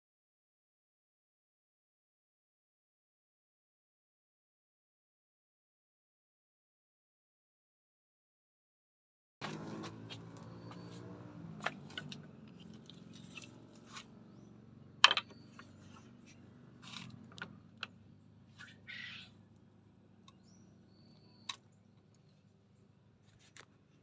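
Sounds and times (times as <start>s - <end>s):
diesel engine hum: 9.4s - 24.0s.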